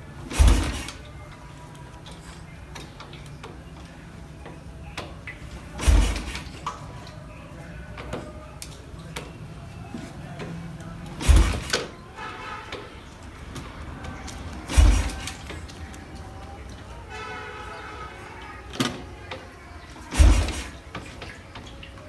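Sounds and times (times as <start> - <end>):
kick lever heavy thumps: 11.2 - 11.9.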